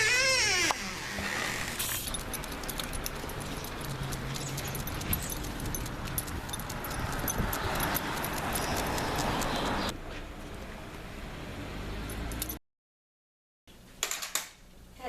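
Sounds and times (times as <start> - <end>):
light metallic jingles: 1.8 - 9.9.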